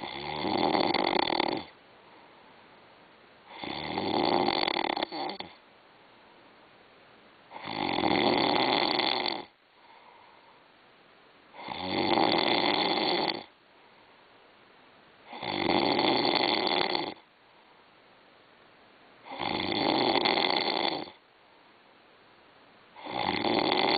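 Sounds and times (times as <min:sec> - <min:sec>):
person snoring: 0:00.0 - 0:01.7, 0:03.5 - 0:05.6, 0:07.5 - 0:10.1, 0:11.6 - 0:13.5, 0:15.3 - 0:17.2, 0:19.2 - 0:21.2, 0:23.0 - 0:23.9
faint breathing: 0:01.9 - 0:03.7, 0:09.7 - 0:10.8, 0:17.4 - 0:18.0.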